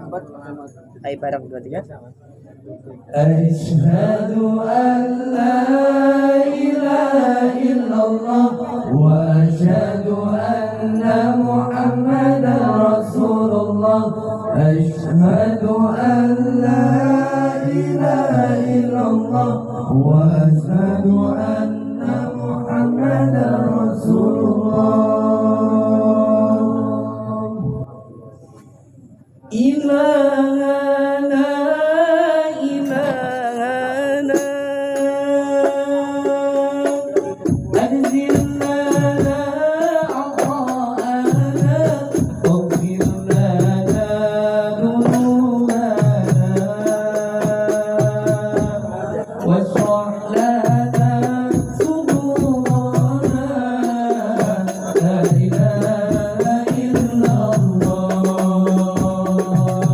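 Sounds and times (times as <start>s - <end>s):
hand percussion beat: 34.2s - 44.3s, 45.0s - 49.0s, 49.8s - 59.9s.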